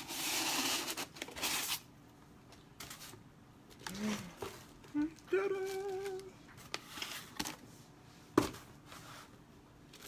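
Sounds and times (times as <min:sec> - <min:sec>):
person holding a sung note: 0:04.9 - 0:06.4.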